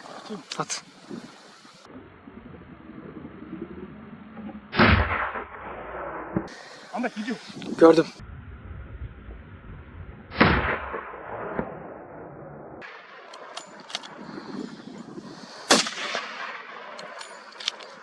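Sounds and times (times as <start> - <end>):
gunshots with rolling echo: 15.4 - 18.0.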